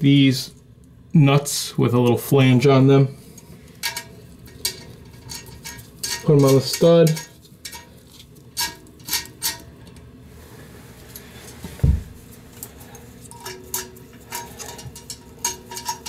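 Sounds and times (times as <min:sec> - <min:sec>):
dull thump: 0:11.6 - 0:12.2.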